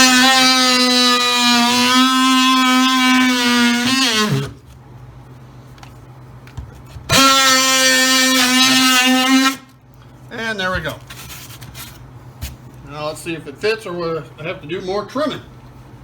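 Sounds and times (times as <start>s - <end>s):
oscillating multi-tool whining: 0.0s - 4.5s.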